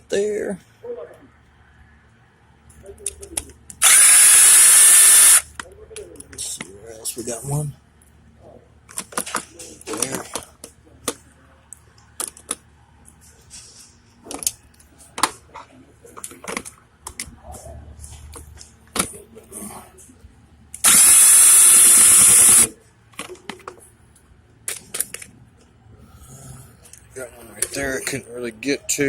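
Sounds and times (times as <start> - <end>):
power driver spinning bolt: 3.7 - 5.5, 20.8 - 22.7.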